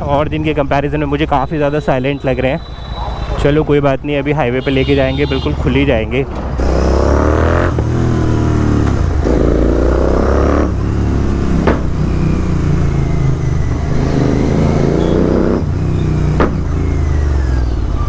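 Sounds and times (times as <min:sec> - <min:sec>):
exhaust cracks: 0:06.3 - 0:18.0
motorcycle engine accelerating: 0:06.6 - 0:18.0.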